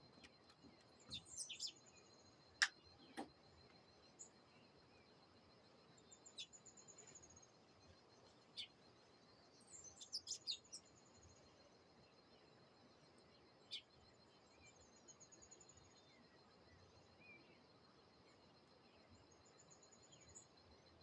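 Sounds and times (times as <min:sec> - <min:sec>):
birds trilling and chirping: 0:00.1 - 0:03.3.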